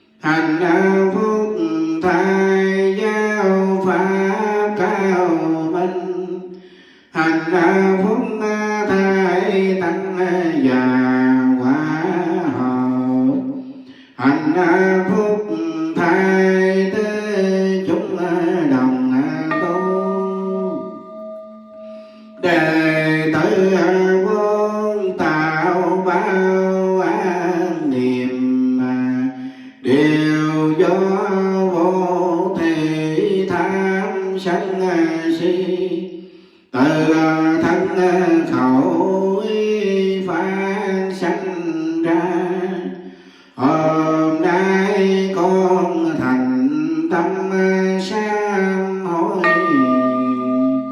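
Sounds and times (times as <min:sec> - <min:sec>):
chant in long held notes: 0:14.2 - 0:33.6, 0:48.0 - 0:50.9
melodic chant in long held notes: 0:19.4 - 0:23.8, 0:49.4 - 0:50.9
instrumental accompaniment: 0:19.5 - 0:23.2, 0:49.4 - 0:50.9.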